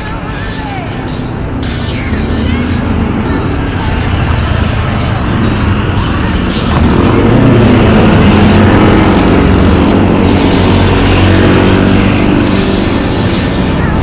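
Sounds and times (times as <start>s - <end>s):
vehicle engine running: 0.0s - 14.0s.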